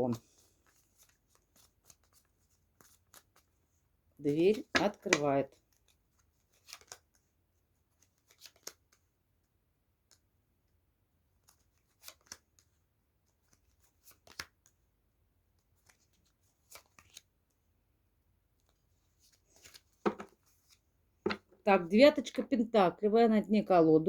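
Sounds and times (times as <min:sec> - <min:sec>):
cards being shuffled: 0:00.4 - 0:03.6, 0:04.3 - 0:07.2, 0:07.8 - 0:09.0, 0:11.4 - 0:12.7, 0:13.3 - 0:14.8, 0:15.5 - 0:17.3, 0:18.6 - 0:21.6.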